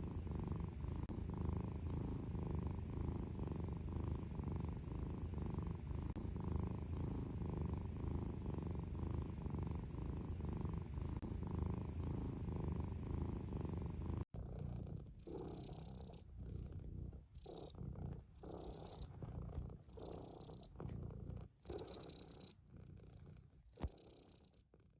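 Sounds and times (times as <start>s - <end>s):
cat purring: 0.0s - 24.9s.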